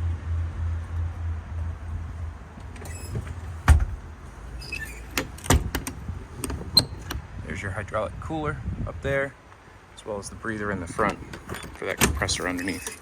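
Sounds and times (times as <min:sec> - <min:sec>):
truck engine pulsing hum: 0:00.0 - 0:07.5
loud thump: 0:03.2 - 0:04.0
sharp knocks and clicks: 0:05.2 - 0:07.2.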